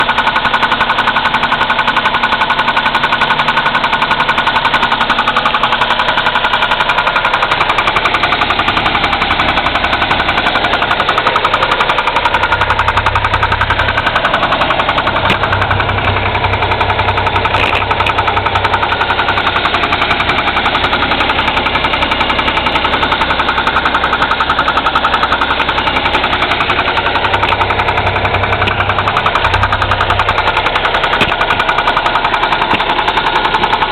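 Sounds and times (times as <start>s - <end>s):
engine running with rattle: 0.0s - 33.9s
low hum: 12.3s - 32.9s.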